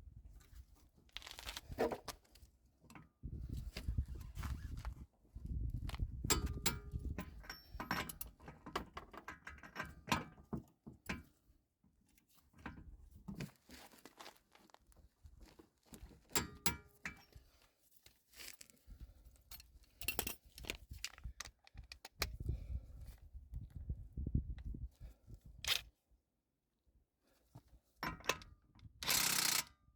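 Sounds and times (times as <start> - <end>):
metal tools clinking and knocking: 6.3 - 10.3, 16.3 - 17.4, 19.5 - 21.5.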